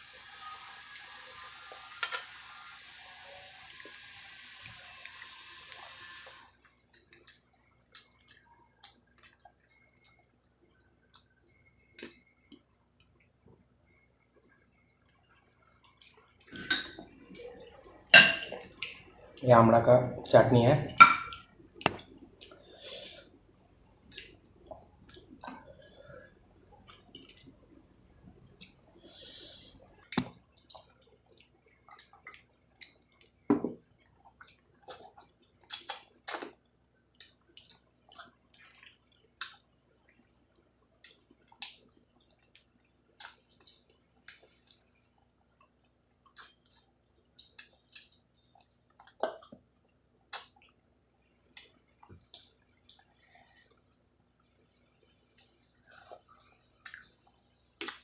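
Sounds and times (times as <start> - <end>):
wet chewing: 34.0 - 36.6, 45.6 - 50.8, 55.4 - 58.0
lip-smacking clicks: 56.8 - 58.0.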